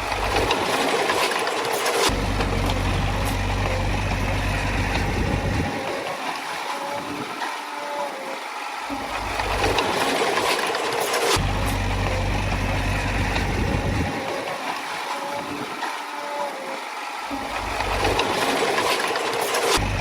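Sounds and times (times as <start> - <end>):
bulldozer diesel engine running: 0.0 - 6.2, 9.0 - 14.6, 17.4 - 20.0.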